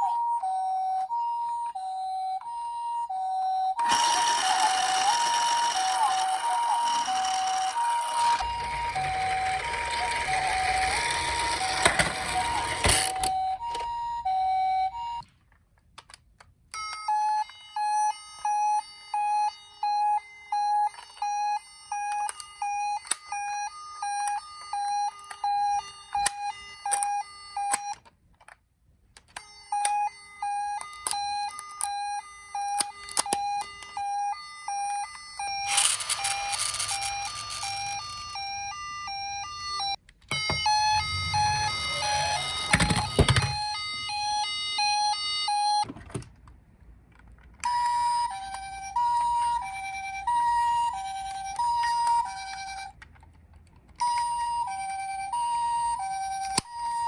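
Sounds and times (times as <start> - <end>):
two-tone toy siren: 0.0 - 15.3, 16.7 - 28.1, 29.3 - 45.9, 47.6 - 53.0, 53.9 - 57.0
electronic beeping tones: 35.8 - 43.8.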